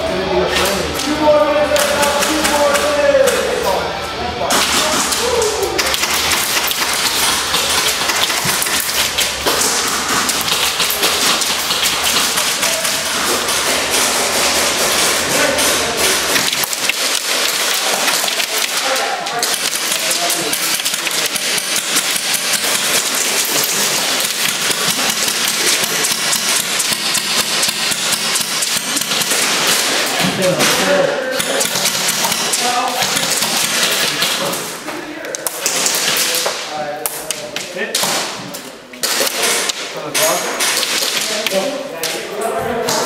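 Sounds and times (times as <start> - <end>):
indistinct voices: 0.0 - 26.9, 28.3 - 43.0
airsoft gunfire clatter: 5.8 - 30.8
pellet impacts: 5.8 - 34.6.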